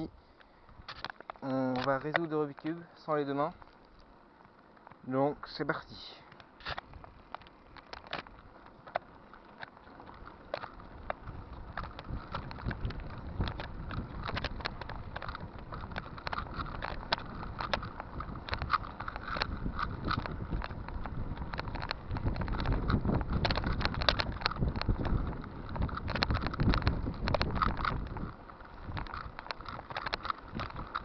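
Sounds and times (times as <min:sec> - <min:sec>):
bicycle rumble: 0:00.0 - 0:31.0
sharp clicks and rattles: 0:00.4 - 0:31.0
wind noise on microphone: 0:06.6 - 0:31.0.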